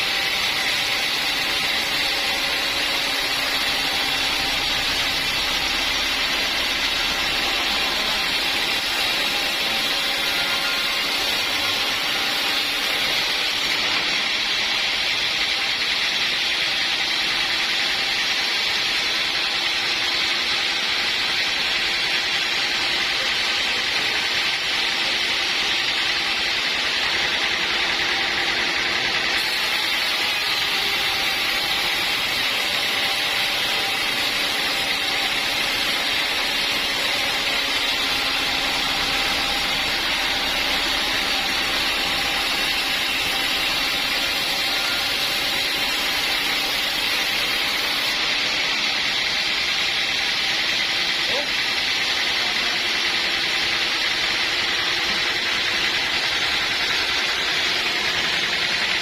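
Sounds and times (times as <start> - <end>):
sawmill saw cutting wood: 0.0 - 59.0.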